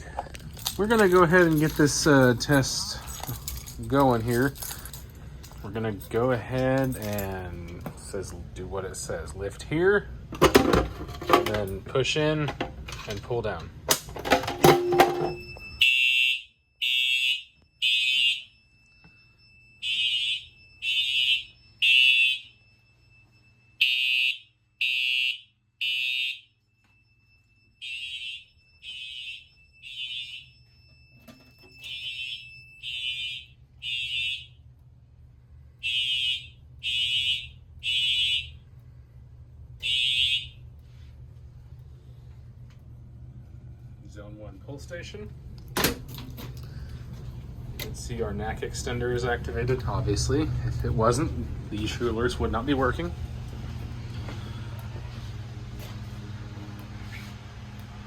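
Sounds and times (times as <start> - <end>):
fire alarm horn blasts: 14.6 - 34.8, 35.7 - 38.9, 39.8 - 40.8
faint steady tone: 18.4 - 19.8.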